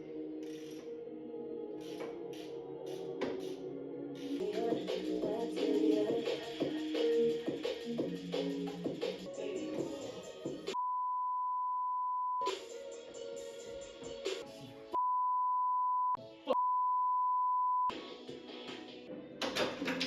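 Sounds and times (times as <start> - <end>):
background music: 0.0 - 10.8, 12.4 - 15.0, 17.9 - 20.0
long high beep tone: 15.0 - 17.9.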